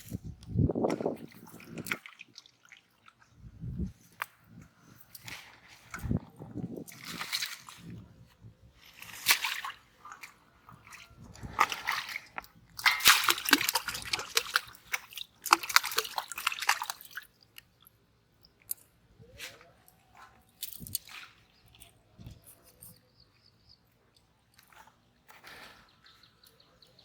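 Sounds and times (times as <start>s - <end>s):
muddy water sloshing: 0.0s - 17.9s
wet mud squelching: 5.0s - 8.1s, 8.8s - 17.8s.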